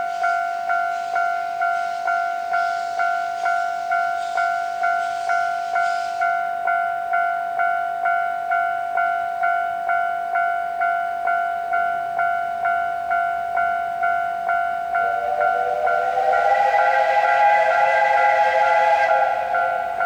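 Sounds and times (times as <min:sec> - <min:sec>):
steam locomotive whistle: 0:14.7 - 0:20.0.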